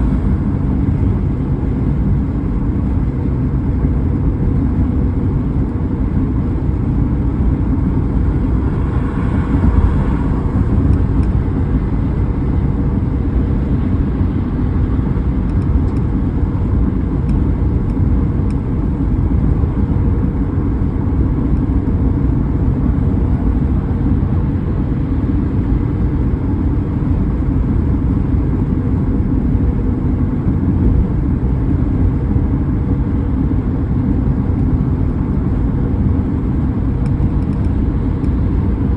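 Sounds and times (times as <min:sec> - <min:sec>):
car road and engine rumble: 0:00.0 - 0:38.9.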